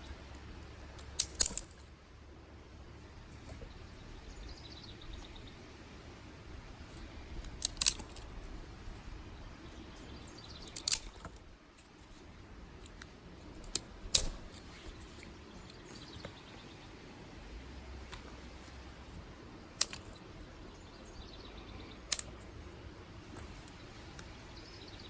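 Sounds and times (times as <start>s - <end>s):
dry sticks snapping: 0.0s - 1.9s, 6.6s - 9.1s, 10.0s - 12.2s, 12.8s - 16.4s, 18.0s - 20.8s, 21.7s - 24.4s.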